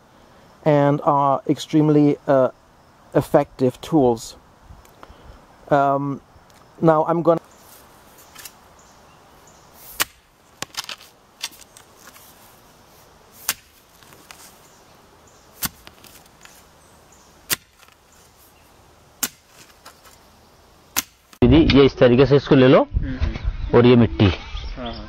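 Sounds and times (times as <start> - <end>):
fork tines striking soil: 8.2 - 8.6, 9.8 - 12.4, 13.4 - 14.6, 15.5 - 16.7, 17.4 - 18.4, 19.2 - 20.2, 20.9 - 21.4.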